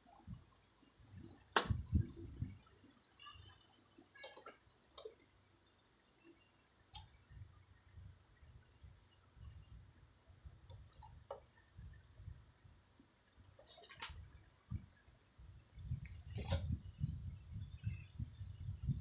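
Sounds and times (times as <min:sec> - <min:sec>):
faint low rumble: 0:00.2 - 0:02.7.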